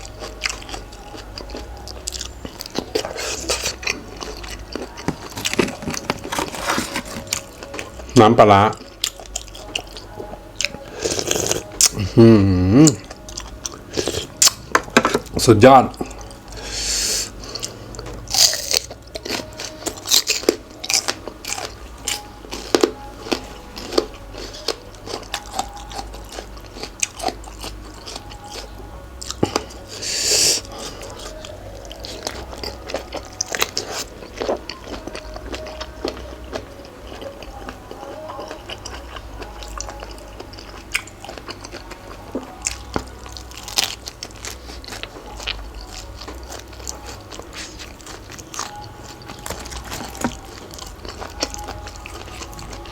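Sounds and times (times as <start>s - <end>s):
person chewing crunchy food: 0.0s - 52.9s.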